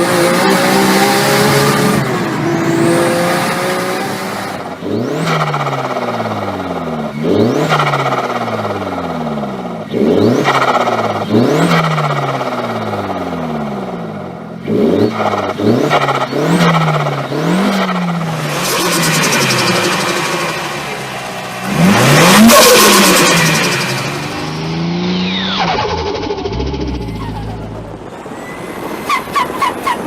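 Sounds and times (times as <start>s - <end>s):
turbocharged car engine revving: 0.0s - 30.0s
turbo flutter: 25.1s - 30.0s.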